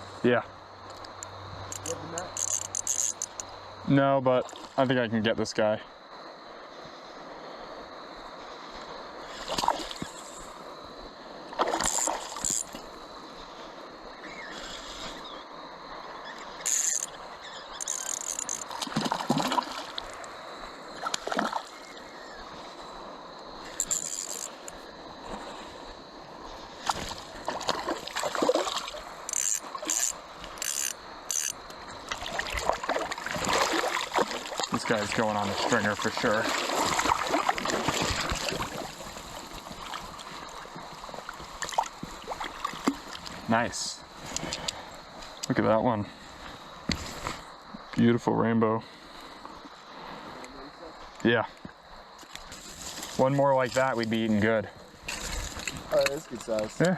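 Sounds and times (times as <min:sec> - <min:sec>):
river flowing: 0:00.0 - 0:03.8, 0:05.9 - 0:45.4
fish splashing in water: 0:17.8 - 0:20.2, 0:21.0 - 0:22.1, 0:26.8 - 0:30.5, 0:32.0 - 0:43.3.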